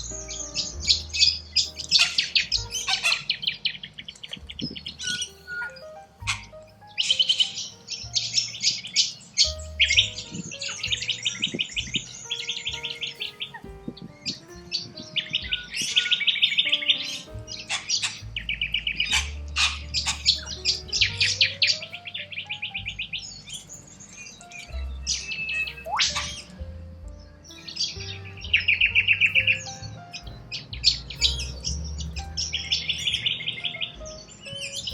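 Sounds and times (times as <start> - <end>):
background music with slow bass: 0.0 - 34.9
cockatoos chattering calls: 1.7 - 4.4, 15.2 - 18.2, 25.2 - 26.6.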